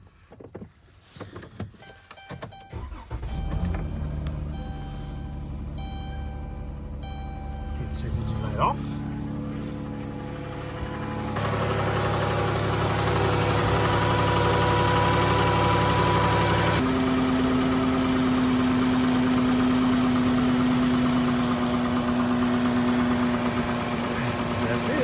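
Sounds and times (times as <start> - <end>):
car engine idling: 1.9 - 25.0.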